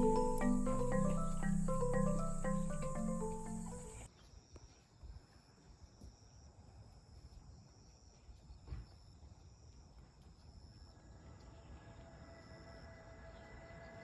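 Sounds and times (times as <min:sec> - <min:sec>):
crickets trilling: 0:00.0 - 0:04.1.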